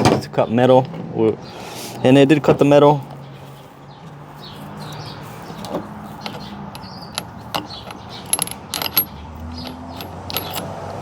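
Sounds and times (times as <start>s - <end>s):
light metallic clicks and clinks: 4.8s - 10.7s.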